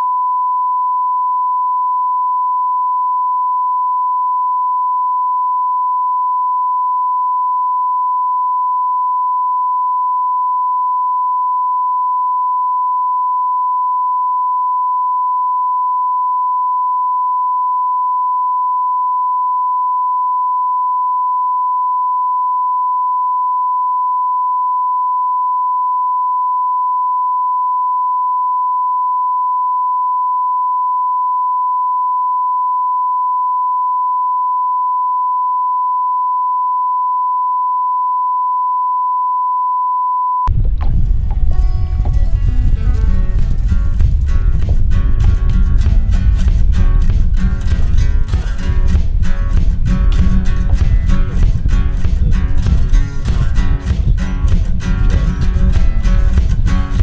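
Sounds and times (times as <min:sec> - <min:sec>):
steady test tone: 0:40.5 - 0:57.0.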